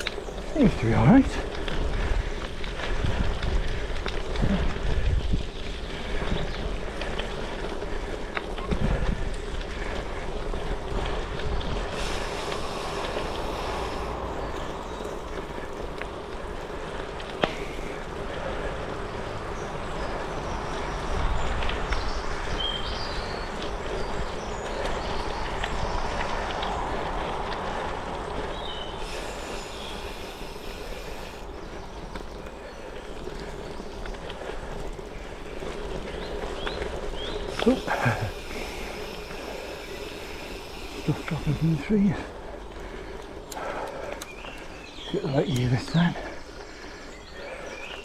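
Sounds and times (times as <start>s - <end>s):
tyres rolling over rough trail: 0.0s - 48.0s
wind on microphone: 1.7s - 6.7s.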